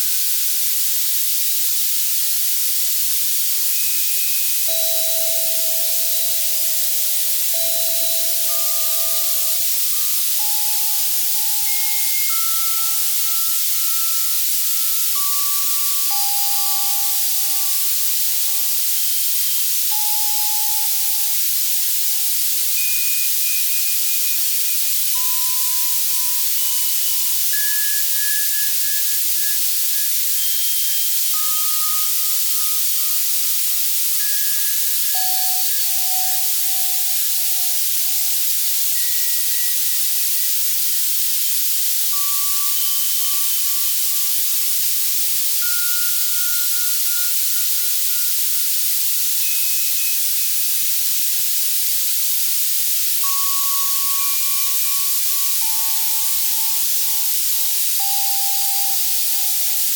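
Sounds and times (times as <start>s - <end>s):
white-noise hiss: 0.0s - 59.9s
soft synthesizer bell tones: 4.7s - 17.2s.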